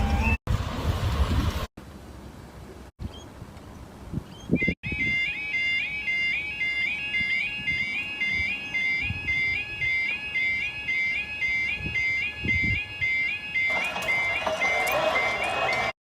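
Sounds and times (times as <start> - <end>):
electronic alarm stepped tone: 4.6 - 16.0.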